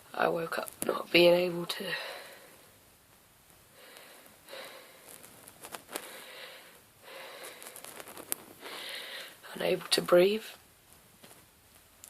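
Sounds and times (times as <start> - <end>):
man breathing laboured: 3.8 - 5.2, 5.9 - 7.8, 8.6 - 9.4.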